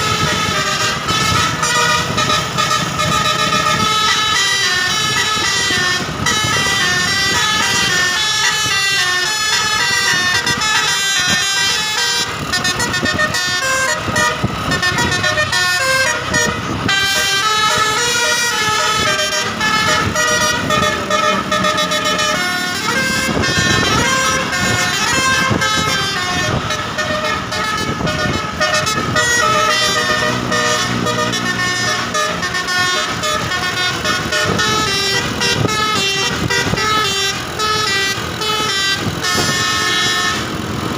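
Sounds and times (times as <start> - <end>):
bus engine and road noise: 0.0 - 40.9
bus horn playing melodies: 0.0 - 40.9.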